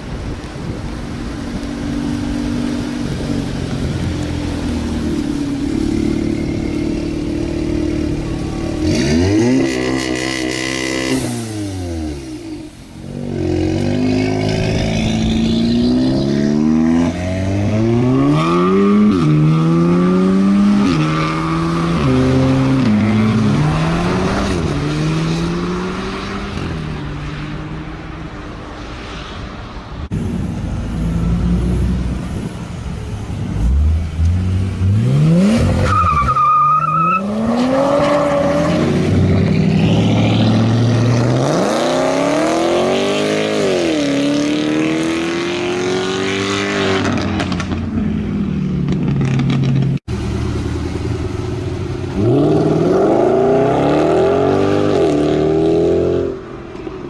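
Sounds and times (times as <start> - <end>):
car engines revving: 0.0 - 57.0.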